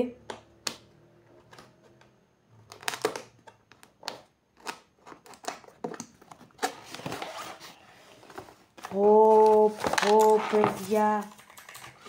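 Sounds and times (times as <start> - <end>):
cardboard and plastic crackling: 2.6 - 12.0.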